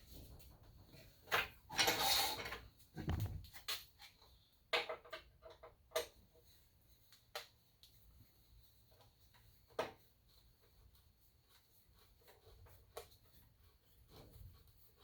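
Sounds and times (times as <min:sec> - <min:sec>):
clicks and knocks of handling: 0:03.0 - 0:04.1.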